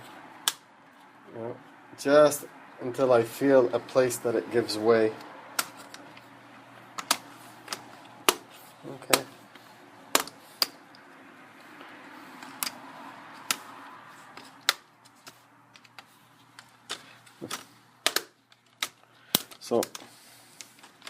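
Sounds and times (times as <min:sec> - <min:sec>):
plastic clips clicking and snapping: 0:06.9 - 0:09.3, 0:10.1 - 0:11.0, 0:14.3 - 0:21.0.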